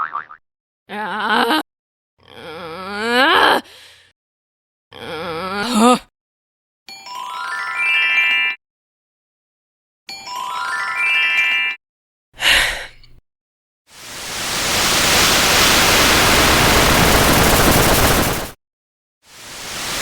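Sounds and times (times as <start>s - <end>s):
steady static hiss: 14.0s - 18.5s, 19.4s - 20.0s
noisy burst with low thump: 14.1s - 18.6s.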